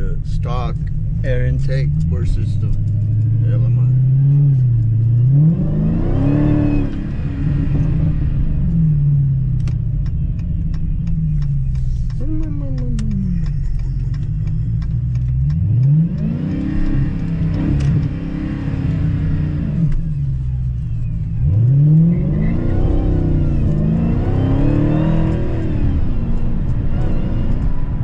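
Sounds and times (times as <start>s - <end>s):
car engine accelerating: 0.0s - 28.0s
sharp ticks: 9.6s - 18.1s.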